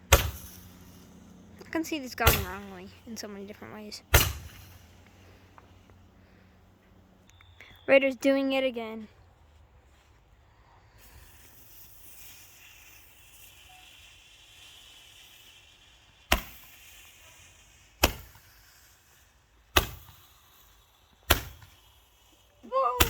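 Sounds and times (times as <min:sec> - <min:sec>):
firework bangs: 0:00.0 - 0:05.4, 0:11.0 - 0:23.0
firework fuse hissing: 0:00.0 - 0:07.9, 0:09.6 - 0:23.0.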